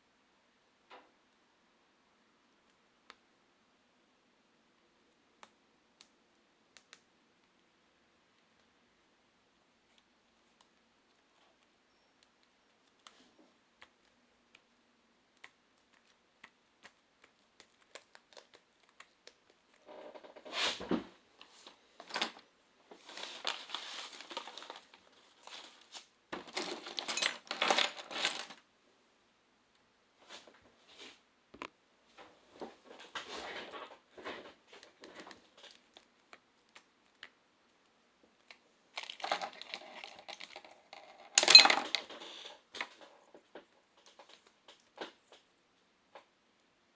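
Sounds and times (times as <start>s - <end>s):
crinkling and scraping of plastic: 17.6s - 28.6s, 32.5s - 37.3s, 38.4s - 45.4s.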